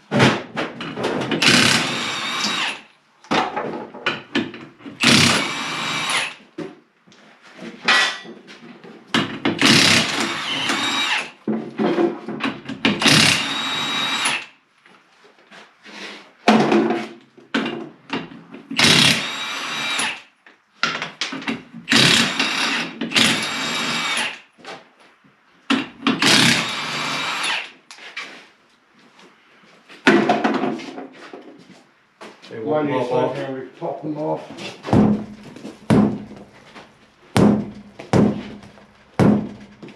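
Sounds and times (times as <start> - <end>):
impact wrench running: 1.4 - 2.8, 5.0 - 6.4, 9.6 - 11.3, 12.9 - 14.5, 18.7 - 20.2, 21.9 - 24.4, 26.2 - 27.7.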